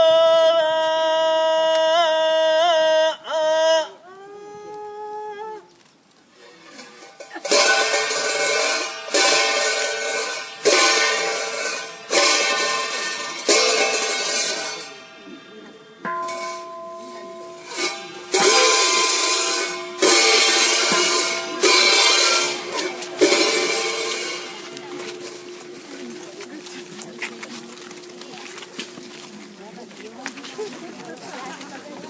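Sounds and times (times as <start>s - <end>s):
ringing metal percussion strokes: 6.4s - 30.0s.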